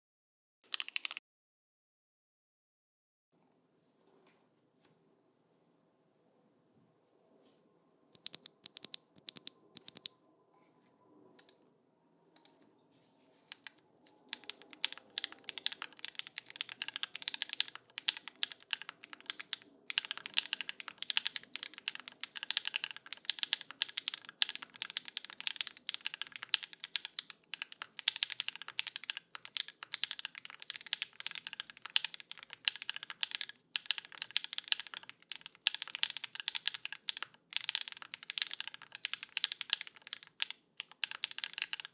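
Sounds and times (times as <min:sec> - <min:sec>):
mechanical keyboard typing: 0:00.7 - 0:01.2, 0:08.1 - 0:10.2, 0:13.4 - 0:41.9.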